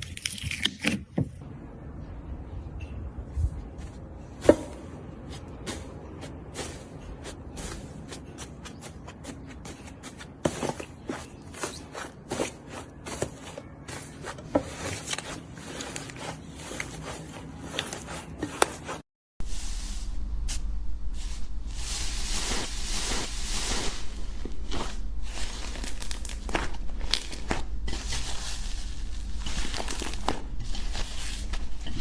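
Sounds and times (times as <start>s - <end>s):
low hum: 1.4s - 7.6s, 19.4s - 32.0s
slime crackling and popping: 24.7s - 28.6s, 29.4s - 31.2s.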